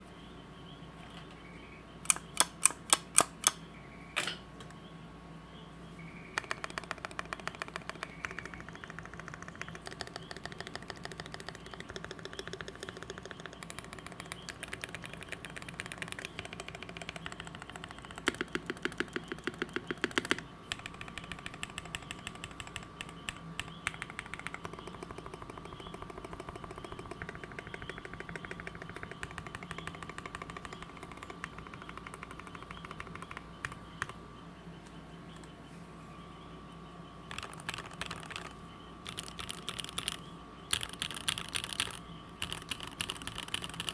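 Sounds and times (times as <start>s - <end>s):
fast typing on mechanical keyboard: 6.4s - 34.2s, 37.3s - 43.9s.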